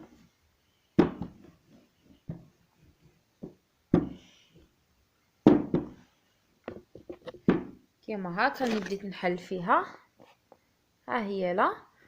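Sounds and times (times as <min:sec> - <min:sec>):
rolling pin knocking on surface: 0:05.5 - 0:06.0.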